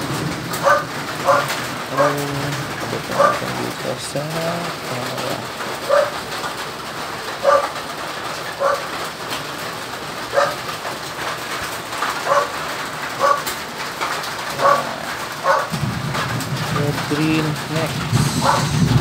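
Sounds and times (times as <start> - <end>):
dog barking: 0.6 - 2.2, 3.2 - 3.4, 5.9 - 6.2, 7.4 - 7.8, 8.6 - 8.9, 10.3 - 10.7, 12.2 - 12.6, 13.2 - 13.5, 14.5 - 15.8, 18.4 - 18.7.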